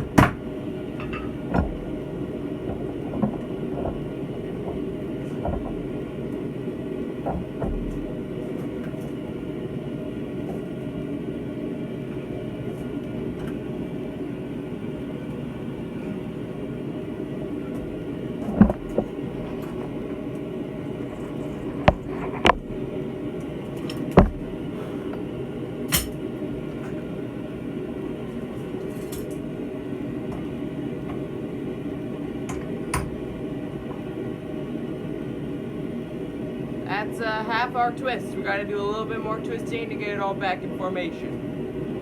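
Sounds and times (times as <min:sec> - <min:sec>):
forge roaring: 0:00.0 - 0:42.0
metal tools clanking on steel: 0:01.0 - 0:01.4.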